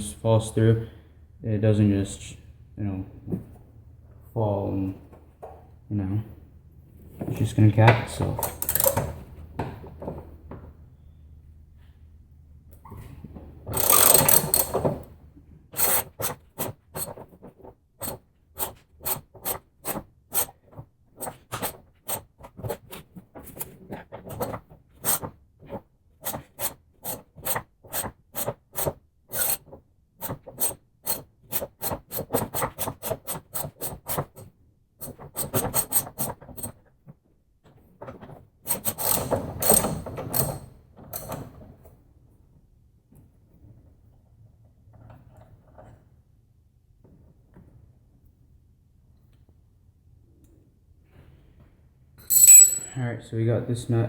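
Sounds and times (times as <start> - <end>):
ratchet wrench clicking: 8.4 - 9.1, 13.8 - 14.8, 15.8 - 16.3, 27.9 - 29.6, 38.7 - 40.5.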